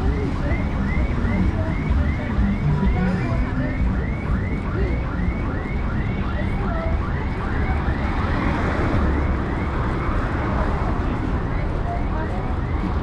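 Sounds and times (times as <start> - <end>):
electronic siren alarm whooping: 0.0 - 10.4
street noise: 0.0 - 13.0.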